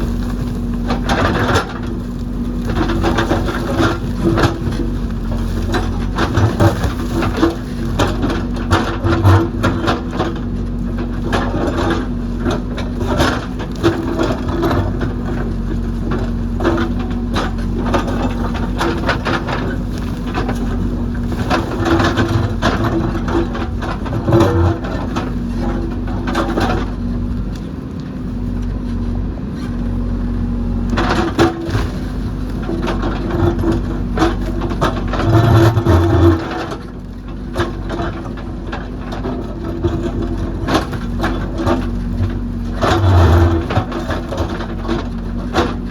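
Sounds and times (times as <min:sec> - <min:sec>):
diesel engine running: 0:00.0 - 0:45.9
rock and soil crunching: 0:00.0 - 0:45.9.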